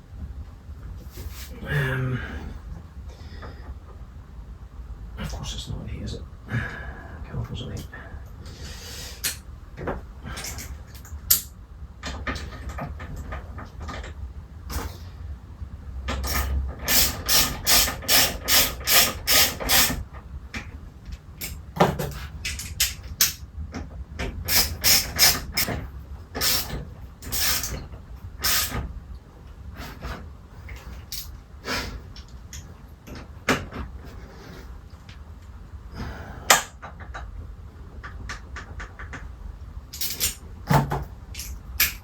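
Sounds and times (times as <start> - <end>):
ratchet wrench rasping: 16.3 - 20.0, 24.5 - 25.7.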